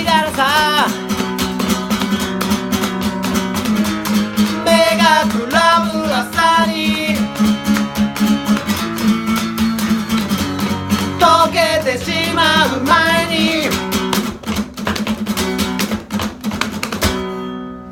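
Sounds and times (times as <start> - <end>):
person singing with vibrato: 0.0 - 7.9, 10.9 - 14.1
guitar strumming chords: 0.0 - 17.9.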